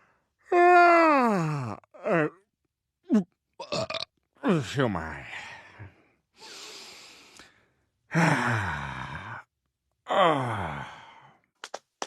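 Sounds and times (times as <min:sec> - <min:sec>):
breathy intake of air: 0:06.4 - 0:07.6.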